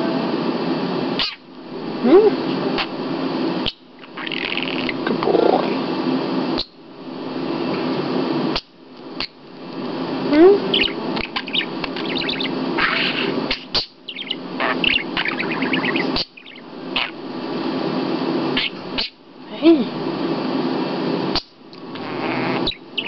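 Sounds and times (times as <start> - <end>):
budgerigar warbling and chattering: 1.2 - 1.4, 3.6 - 5.0, 10.6 - 17.2, 18.5 - 19.2, 21.4 - 23.0.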